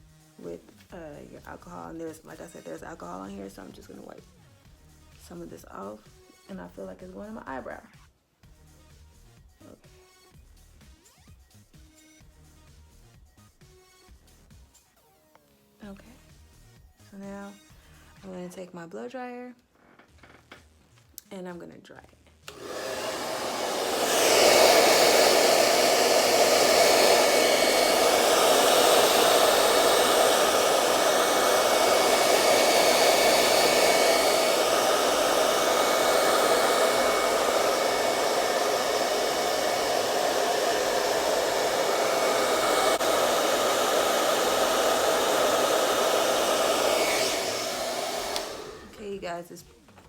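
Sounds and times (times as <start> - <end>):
hair dryer running: 22.5 - 49.2.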